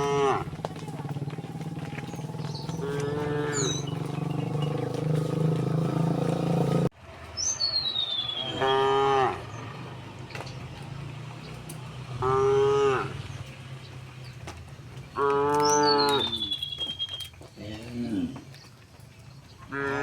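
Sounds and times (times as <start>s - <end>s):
cows mooing: 0.0s - 6.9s, 8.3s - 9.7s, 12.2s - 13.3s, 15.2s - 16.6s, 17.6s - 18.6s, 19.7s - 20.0s.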